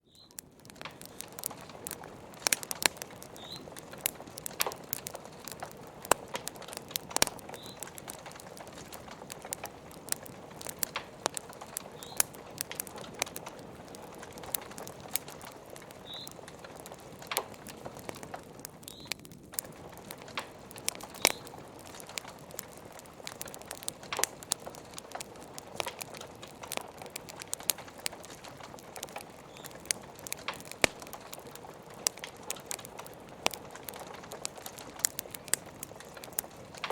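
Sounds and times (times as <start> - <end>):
wood fire crackling: 0.0 - 36.9
high squeaks from fire: 2.4 - 3.8, 7.3 - 9.0, 11.8 - 12.3, 15.8 - 16.7.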